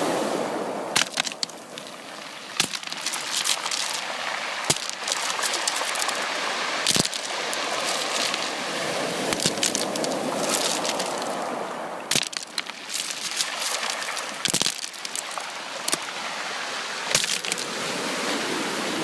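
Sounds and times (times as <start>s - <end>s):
ocean surf washing: 0.0s - 19.0s
sharp crackles and clicks: 1.0s - 1.9s, 2.6s - 4.1s, 4.7s - 6.2s, 6.8s - 8.5s, 9.3s - 11.4s, 12.1s - 16.0s, 17.1s - 17.6s.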